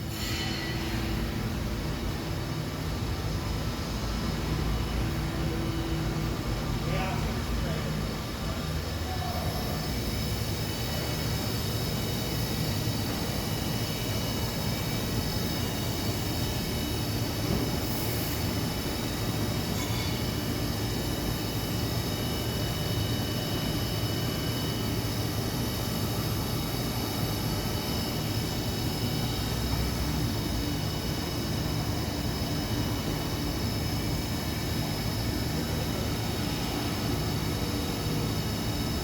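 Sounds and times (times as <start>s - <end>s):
thin high whines: 0.0s - 1.6s.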